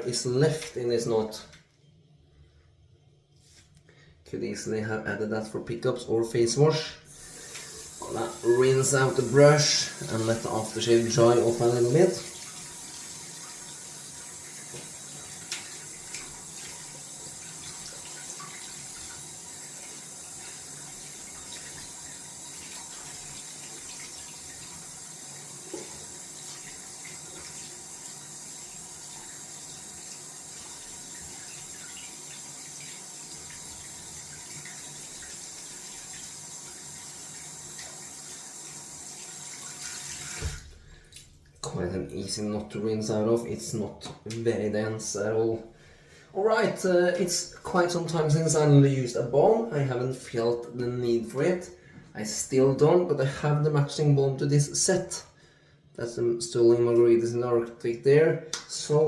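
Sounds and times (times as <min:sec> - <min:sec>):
tap water running into sink: 0:07.1 - 0:41.8.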